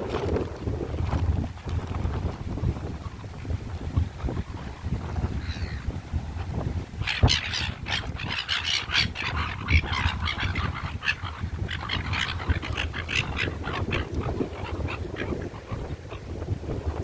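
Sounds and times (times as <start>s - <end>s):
wind rumble on microphone: 0.0s - 17.0s
gulls squawking: 7.0s - 16.2s.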